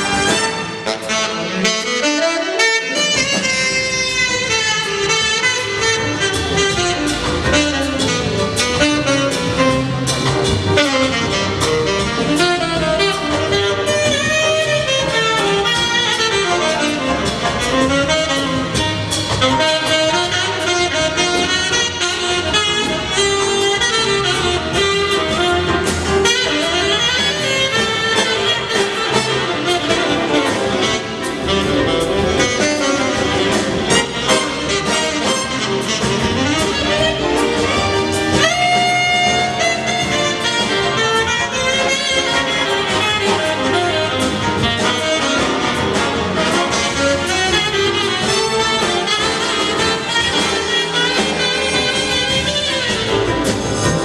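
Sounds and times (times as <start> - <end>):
drum kit groove: 0.0 - 54.0
saxophone and brass sections: 0.0 - 54.0.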